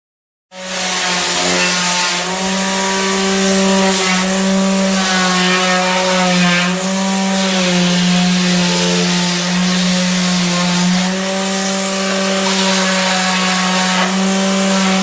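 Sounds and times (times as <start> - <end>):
electric sander motor hum: 5.8 - 15.0.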